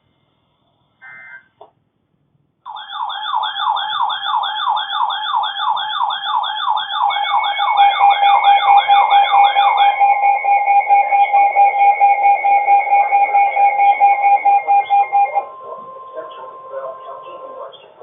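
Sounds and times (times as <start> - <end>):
electronic siren sweeping: 2.7 - 18.0
steady electronic tones: 6.7 - 18.0.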